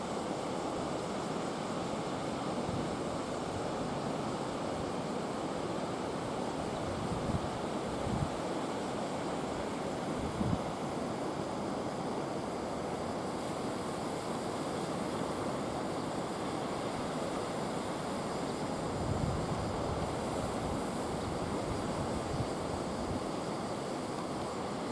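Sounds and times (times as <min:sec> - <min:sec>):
wind buffeting microphone: 0:18.9 - 0:23.2.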